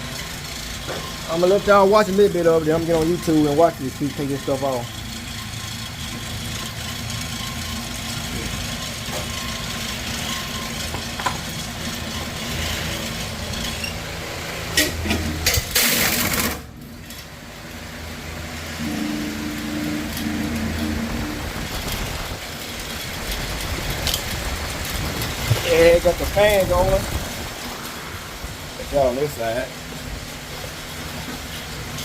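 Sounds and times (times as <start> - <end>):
motor humming: 16.0 - 28.7.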